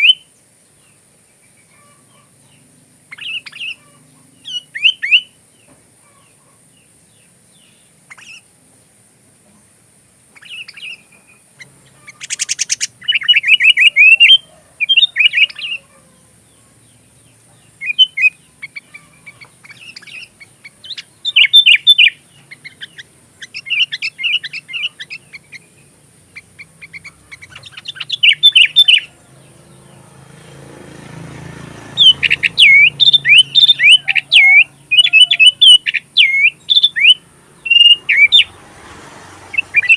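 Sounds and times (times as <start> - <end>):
bird singing bright chirps: 0.0 - 9.7, 10.3 - 39.9.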